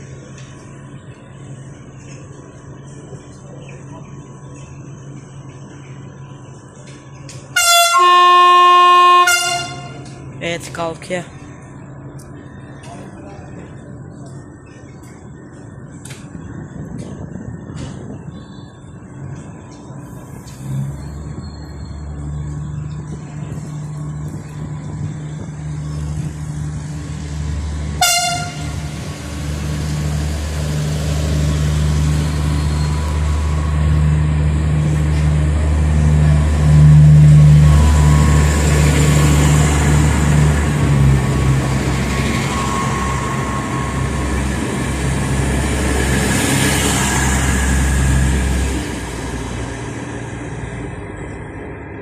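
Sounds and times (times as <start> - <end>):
diesel train engine running: 0.0 - 52.0
train horn toot: 7.5 - 10.2, 28.0 - 29.0.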